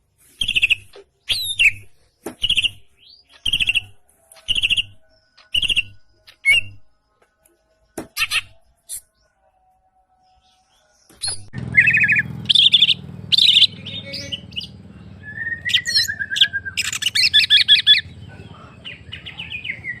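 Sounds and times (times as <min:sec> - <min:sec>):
songbird singing in rattling trills: 0:00.3 - 0:06.9, 0:11.0 - 0:20.0.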